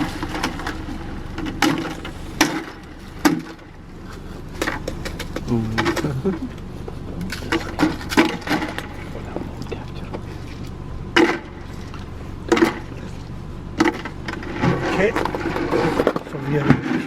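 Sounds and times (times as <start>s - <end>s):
engine and road rumble: 0.0s - 17.0s.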